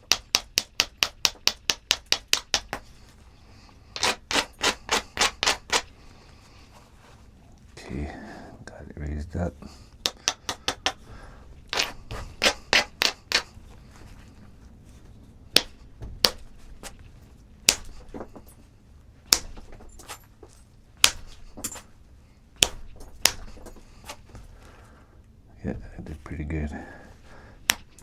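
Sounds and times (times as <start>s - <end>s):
sharp taps on stone: 0.0s - 3.0s, 4.0s - 5.9s, 10.0s - 13.6s, 15.5s - 17.0s, 17.7s - 18.5s, 19.3s - 20.0s, 21.0s - 21.8s, 22.6s - 23.9s, 27.6s - 28.0s
stone clicks: 0.0s - 3.0s, 4.0s - 5.9s, 10.0s - 11.1s, 11.7s - 13.6s, 15.5s - 17.0s, 17.7s - 18.6s, 19.3s - 20.1s, 22.6s - 24.2s, 27.6s - 28.0s.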